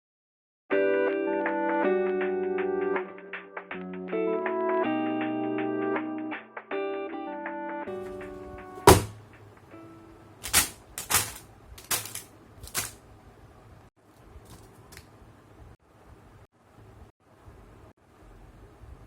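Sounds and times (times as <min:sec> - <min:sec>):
background music: 0:00.8 - 0:09.1.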